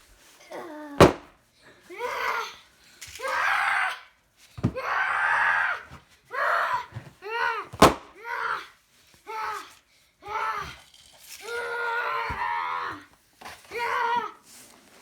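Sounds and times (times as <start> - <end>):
sharp pop: 1.0 - 1.3, 7.8 - 8.1
people screaming and yelling: 11.4 - 13.1.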